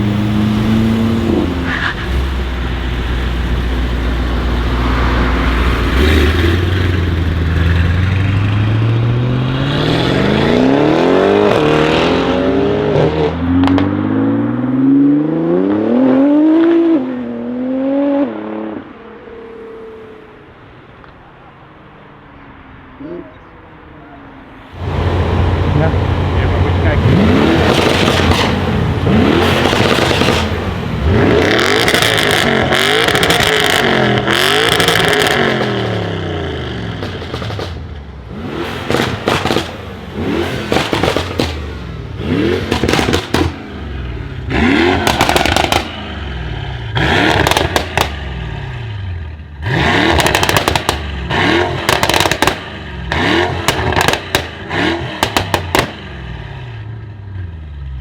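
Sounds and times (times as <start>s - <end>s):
car engine revving: 0.0s - 18.9s, 24.6s - 57.9s
exhaust crackles and pops: 24.8s - 36.2s, 36.8s - 43.6s, 44.6s - 46.1s, 47.0s - 48.3s, 49.9s - 56.1s.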